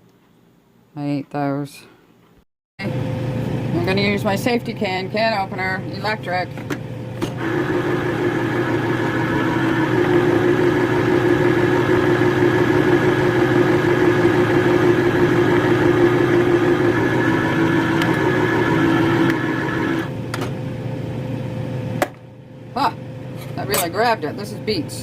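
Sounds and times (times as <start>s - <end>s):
electric can opener whirring: 7.2s - 20.2s.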